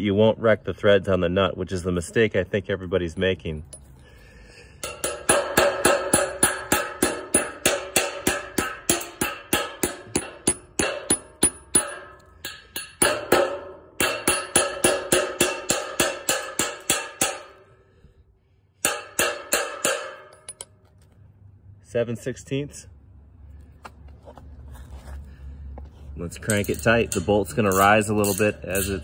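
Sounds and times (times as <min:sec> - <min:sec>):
hammer striking steel bolt: 0:04.8 - 0:17.7, 0:18.8 - 0:20.8.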